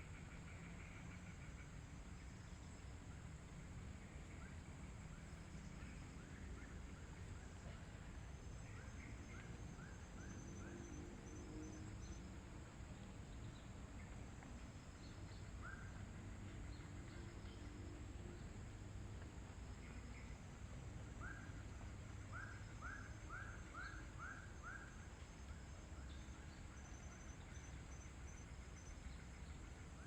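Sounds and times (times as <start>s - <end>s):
faint bird chirps: 3.9s - 17.7s, 21.1s - 30.0s.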